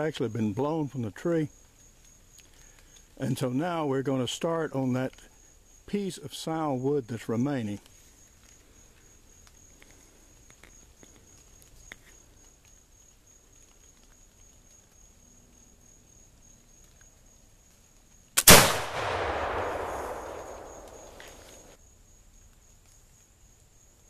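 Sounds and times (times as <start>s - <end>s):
rifle shot with echo: 18.4s - 21.8s.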